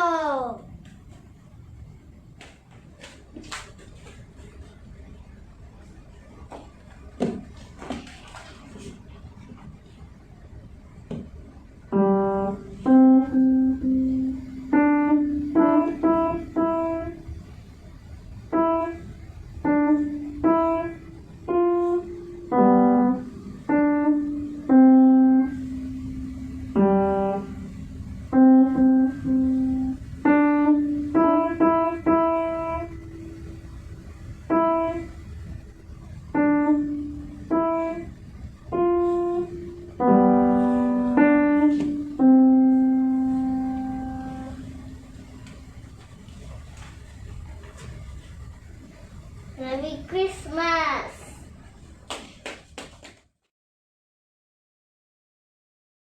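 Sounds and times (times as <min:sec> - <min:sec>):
slow piano melody: 0:11.8 - 0:46.2.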